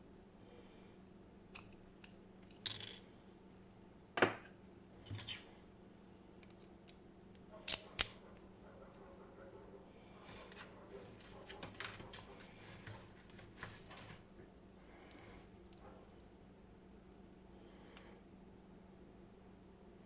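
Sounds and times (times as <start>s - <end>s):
lock cylinder metallic clicks: 7.6s - 8.2s.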